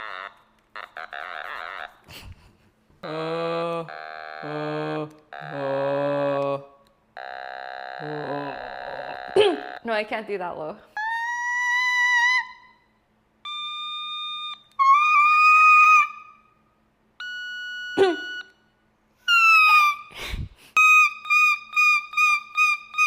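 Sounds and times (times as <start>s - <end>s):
otamatone playing buzzy notes: 17.2s - 18.5s.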